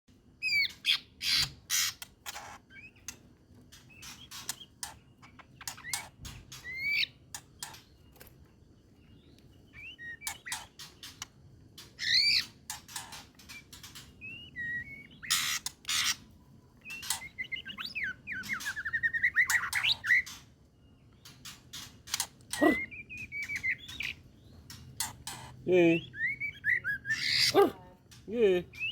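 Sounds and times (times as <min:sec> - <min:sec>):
bird singing: 0:00.3 - 0:28.9
fast chattering bird trill: 0:09.8 - 0:11.2, 0:12.0 - 0:16.3, 0:16.9 - 0:20.4, 0:21.7 - 0:27.9, 0:28.6 - 0:28.9.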